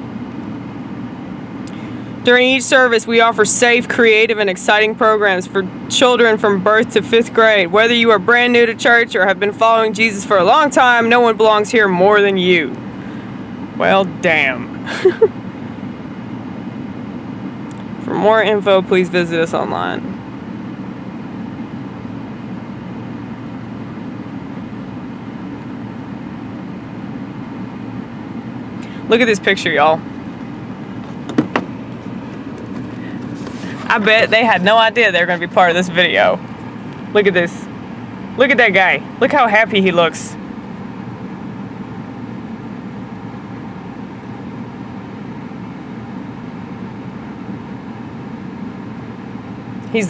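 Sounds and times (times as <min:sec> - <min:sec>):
vehicle rumble from inside cabin: 0:00.0 - 0:46.0.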